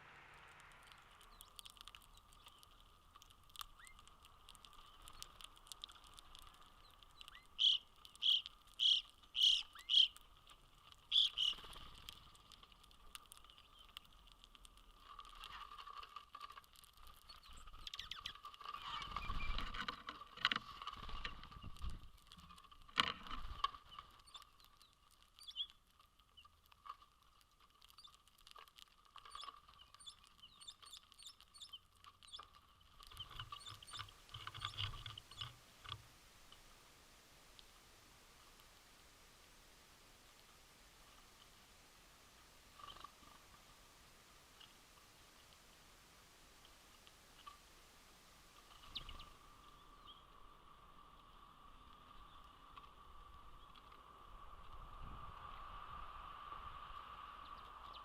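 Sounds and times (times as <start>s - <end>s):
low rumble: 0.0s - 1.6s
bird calling: 6.8s - 10.2s, 11.1s - 11.8s, 29.3s - 35.6s.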